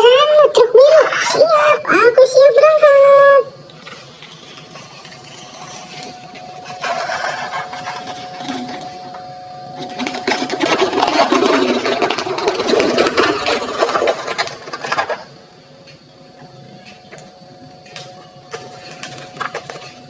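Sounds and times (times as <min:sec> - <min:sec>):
toy truck wheels scraping sand: 0:03.8 - 0:08.9.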